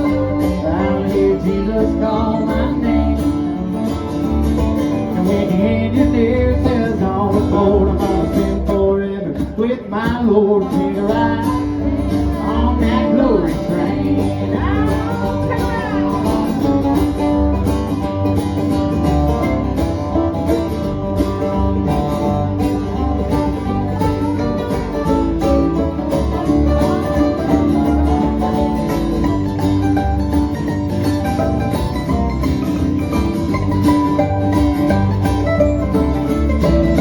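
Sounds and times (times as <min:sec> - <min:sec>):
country gospel instrumental: 0:00.0 - 0:37.0.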